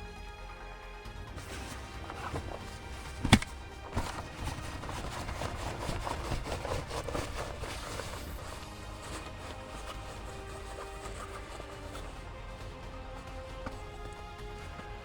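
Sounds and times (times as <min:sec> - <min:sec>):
background music: 0:00.0 - 0:15.0.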